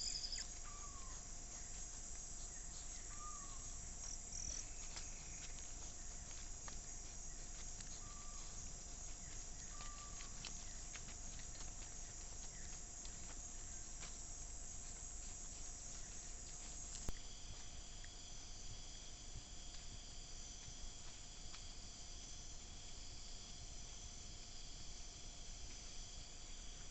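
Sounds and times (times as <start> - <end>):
constant low tone: 0.0 - 26.9
insect chorus buzzing: 0.0 - 26.9
faint clicks and rustles: 3.8 - 17.2.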